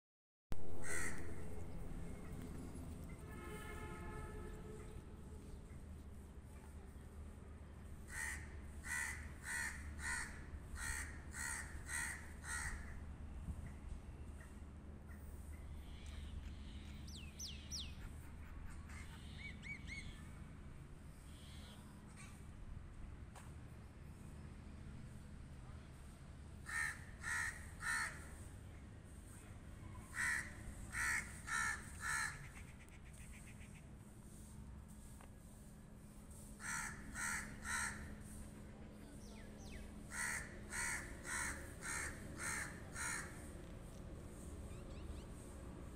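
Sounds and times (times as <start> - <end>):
steady low hum: 0.6 - 8.7
crow cawing: 0.8 - 1.5, 8.1 - 13.0, 26.6 - 28.2, 30.1 - 32.6, 36.6 - 38.4, 40.1 - 43.4.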